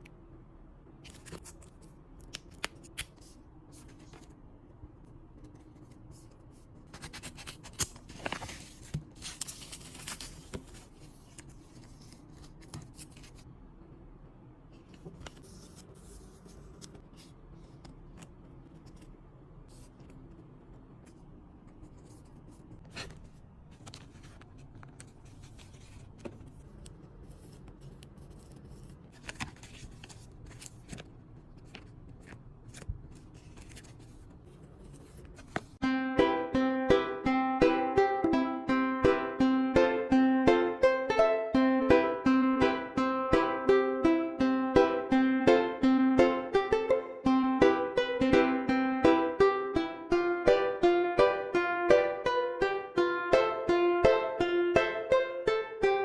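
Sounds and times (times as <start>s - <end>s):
packaging rustling and crinkling: 7.2s - 13.4s.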